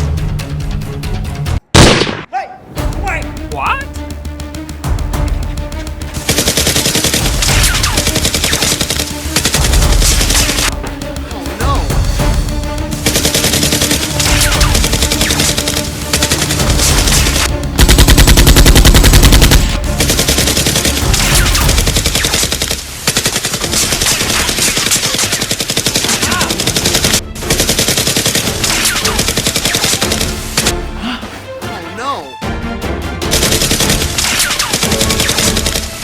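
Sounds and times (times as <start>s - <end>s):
background music: 0.0s - 36.0s
machine-gun fire: 4.1s - 11.1s, 12.9s - 30.7s, 33.3s - 36.0s.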